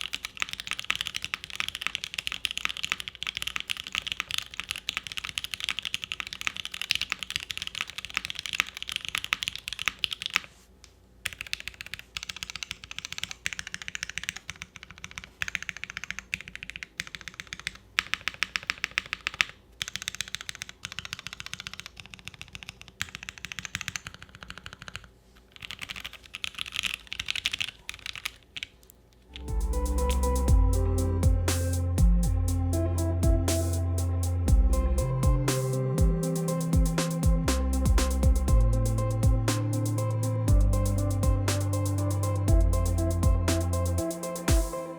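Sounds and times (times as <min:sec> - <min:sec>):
fast typing on mechanical keyboard: 0:00.0 - 0:10.5, 0:11.2 - 0:28.8
electronic music: 0:29.3 - 0:44.9.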